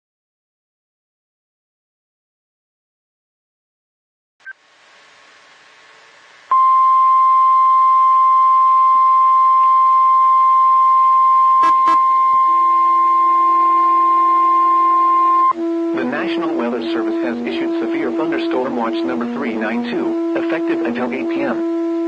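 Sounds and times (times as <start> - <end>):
steady warning alarm tone: 6.5 - 22.0
faint radio static: 12.6 - 22.0.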